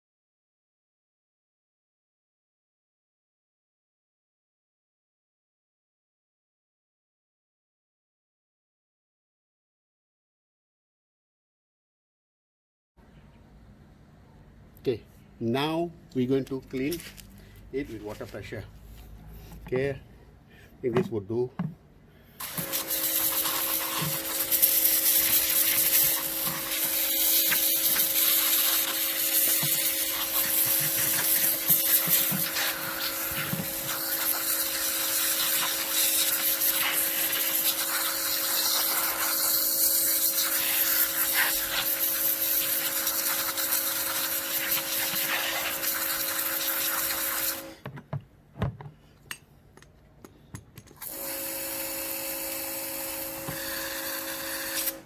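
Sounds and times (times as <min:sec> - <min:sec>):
water spray hissing: 0:22.4 - 0:47.6
pressure washer motor hum: 0:22.4 - 0:48.0, 0:51.0 - 0:55.0.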